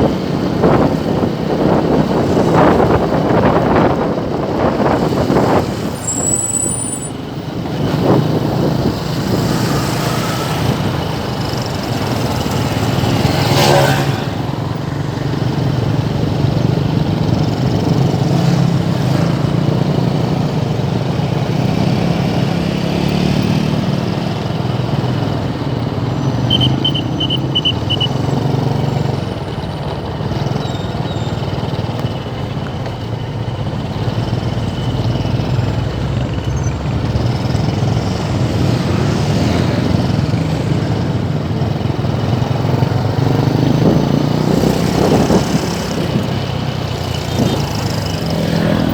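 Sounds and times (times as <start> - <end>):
idling motorcycles and cars: 0.0 - 48.9
short high beeps: 6.0 - 7.2, 26.3 - 28.2
vehicle passing close: 7.8 - 16.8.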